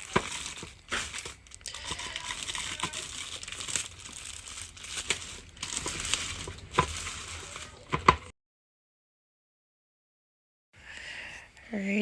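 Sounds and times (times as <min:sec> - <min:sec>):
packaging crinkling: 0:00.0 - 0:08.3
small clicks and crackles: 0:00.0 - 0:08.3.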